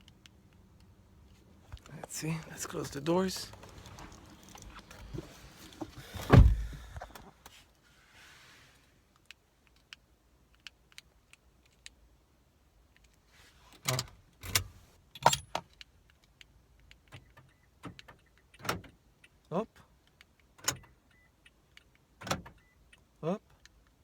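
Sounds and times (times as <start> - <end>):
car door slamming: 5.9 - 7.2
door locks clunking: 6.2 - 7.2.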